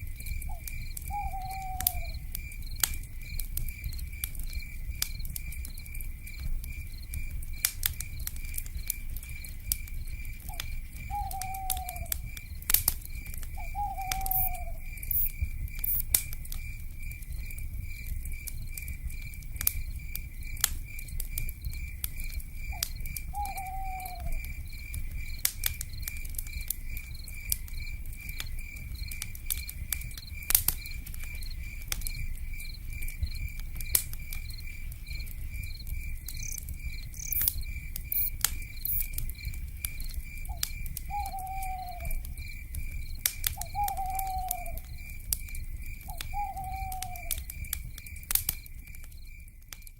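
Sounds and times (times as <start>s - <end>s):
insect chirping: 0.0s - 49.9s
wood fire rumbling and crackling: 0.0s - 49.9s
owl calls: 0.5s - 2.2s, 11.1s - 12.1s, 13.6s - 14.8s, 23.4s - 24.4s, 41.1s - 42.2s, 43.6s - 44.8s, 46.1s - 47.4s.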